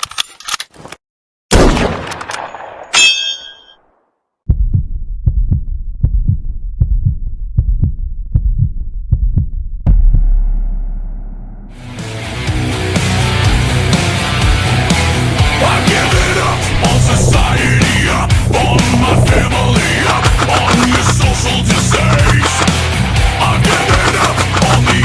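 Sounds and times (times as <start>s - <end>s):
metallic clang: 2.4s - 3.9s
heartbeat lub-dub: 4.5s - 11.7s, 15.4s - 25.0s
low boom: 4.5s - 11.9s, 15.6s - 22.4s.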